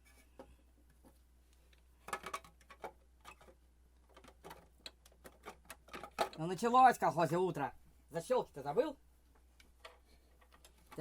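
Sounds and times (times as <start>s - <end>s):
plastic and metal parts clicking: 2.0s - 6.5s, 9.6s - 11.0s.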